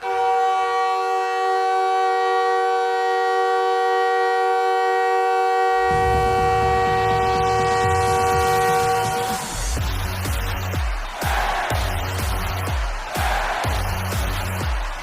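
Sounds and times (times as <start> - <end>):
goal horn blowing a chord: 0.0 - 9.8
bass beat of music: 5.8 - 15.0.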